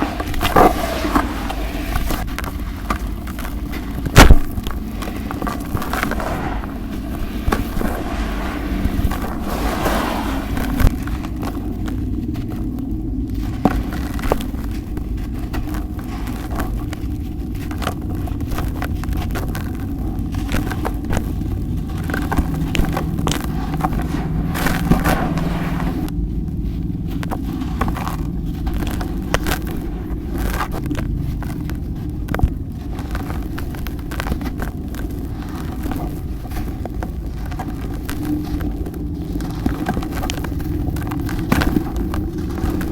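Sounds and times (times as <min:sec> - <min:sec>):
cement crumbling by hand: 0:00.0 - 0:12.6
low microphone rumble: 0:00.0 - 0:42.9.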